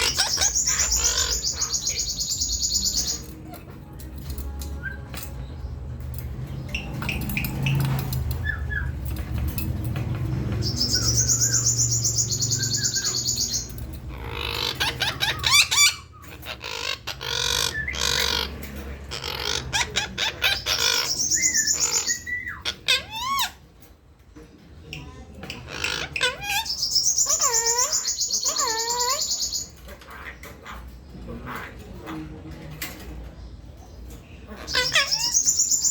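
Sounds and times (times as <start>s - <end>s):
parakeet screeching: 0.0s - 3.7s, 10.6s - 23.6s, 25.7s - 30.8s, 34.5s - 35.9s
parakeet squawks and chatter: 0.0s - 35.9s.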